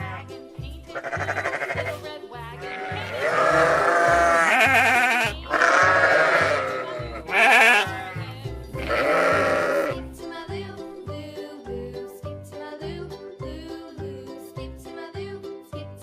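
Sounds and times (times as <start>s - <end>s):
children's music with a beat: 0.0s - 16.0s
sheep bleating: 0.9s - 2.0s, 2.6s - 10.0s.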